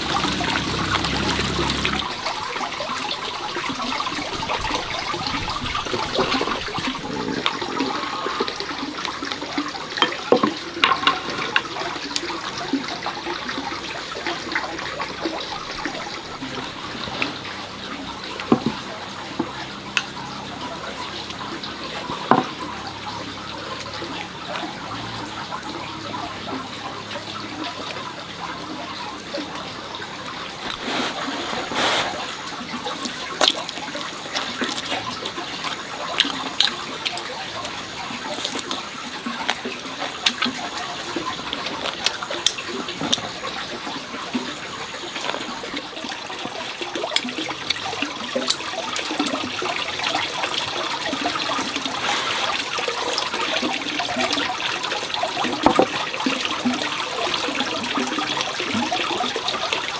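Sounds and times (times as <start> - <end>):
objects clattering in water: 0.0 - 23.1, 55.3 - 59.4
water running and splashing: 0.0 - 59.9.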